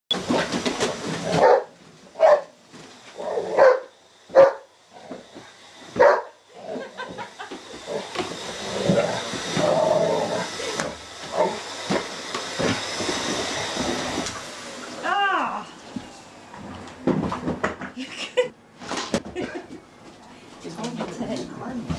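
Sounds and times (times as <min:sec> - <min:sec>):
vacuum cleaner running: 0:00.1 - 0:21.9
dog barking: 0:01.4 - 0:02.6, 0:03.3 - 0:04.7, 0:06.0 - 0:06.4.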